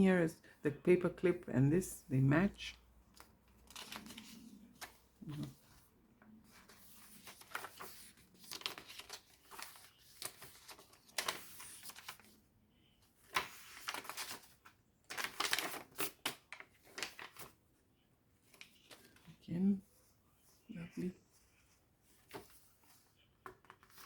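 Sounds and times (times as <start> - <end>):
journal pages turning: 3.0 - 12.4, 13.2 - 17.6, 18.4 - 19.3, 21.4 - 24.0.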